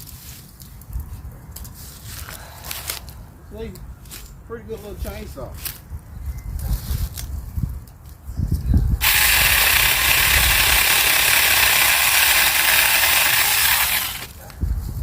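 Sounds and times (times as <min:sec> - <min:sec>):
electric chainsaw whirring: 0:09.0 - 0:14.4.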